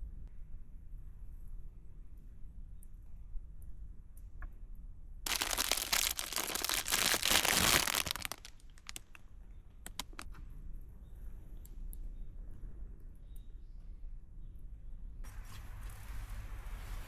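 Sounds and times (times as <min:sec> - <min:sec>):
packaging crinkling: 0:05.3 - 0:09.2, 0:09.9 - 0:10.2.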